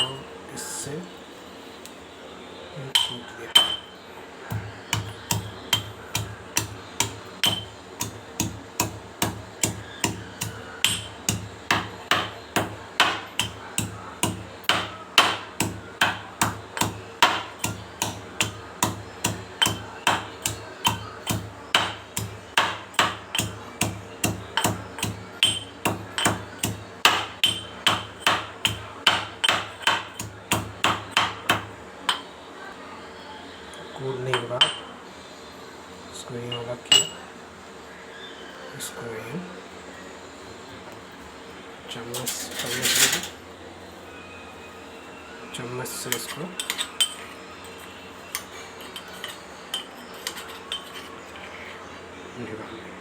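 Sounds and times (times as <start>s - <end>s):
pestle pounding in a mortar: 4.5s - 31.7s.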